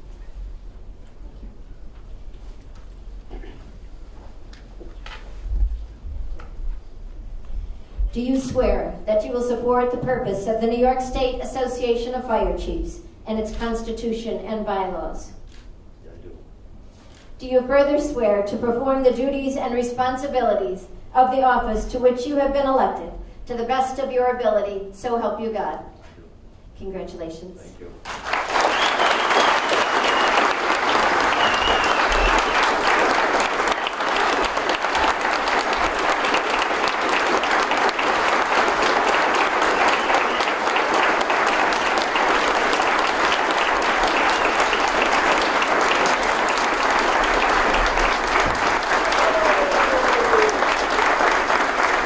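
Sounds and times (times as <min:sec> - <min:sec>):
audience applauding: 0:28.1 - 0:52.0
whistles from crowd: 0:28.6 - 0:30.6, 0:31.2 - 0:32.7, 0:39.8 - 0:40.6.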